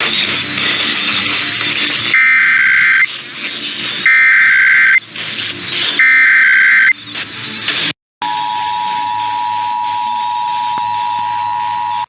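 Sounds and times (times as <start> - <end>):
steady radio hiss: 0.0 - 6.9
two-tone data screech: 0.0 - 12.0.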